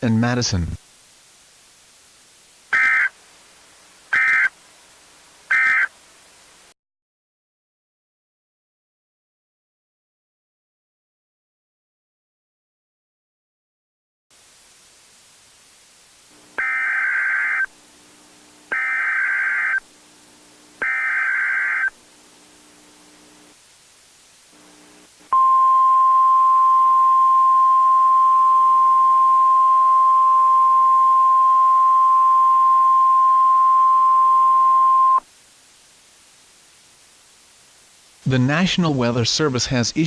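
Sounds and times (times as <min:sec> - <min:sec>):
faint hum: 0:00.0 - 0:06.8, 0:14.3 - 0:40.0
screeching data bursts: 0:02.7 - 0:03.2, 0:04.1 - 0:04.6, 0:05.5 - 0:05.9, 0:16.6 - 0:17.7, 0:18.7 - 0:19.9, 0:20.8 - 0:22.0
steady alarm tone: 0:16.6 - 0:17.7, 0:18.7 - 0:19.8, 0:20.8 - 0:22.0.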